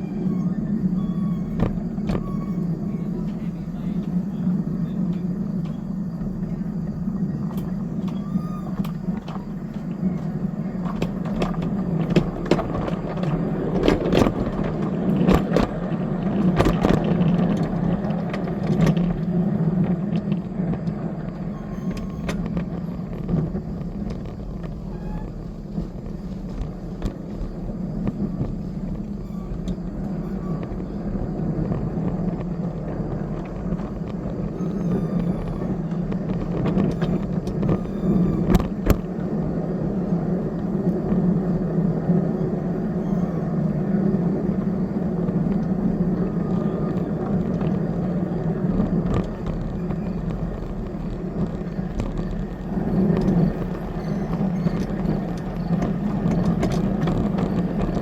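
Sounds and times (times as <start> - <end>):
train engine and wheel rumble: 0.0 - 58.0
wheel clicks: 7.4 - 58.0.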